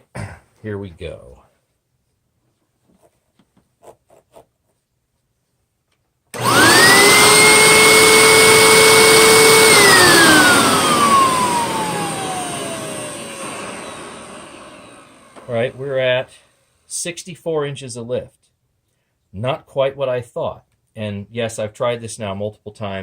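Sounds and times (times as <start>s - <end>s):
vacuum fan motor whining: 6.4s - 16.6s.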